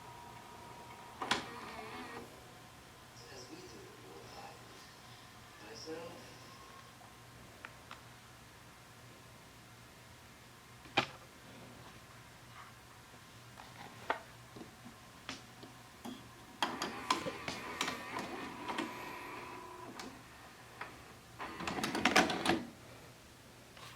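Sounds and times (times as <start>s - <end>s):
motor whirring with whine: 0.0s - 2.3s.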